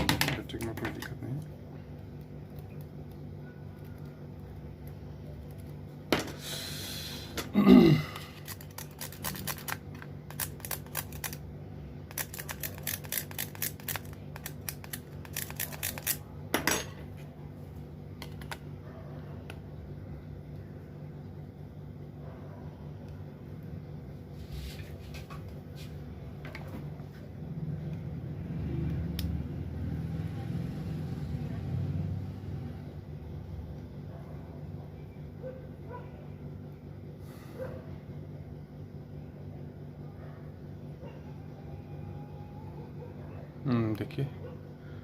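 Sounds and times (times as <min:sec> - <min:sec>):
steady low hum: 0:00.0 - 0:45.0
phone parts clicking and rattling: 0:12.1 - 0:16.2.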